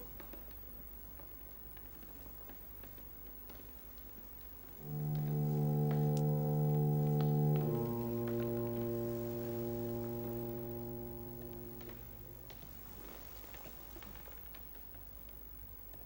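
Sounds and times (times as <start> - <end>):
low brass-like drone: 4.8 - 13.0.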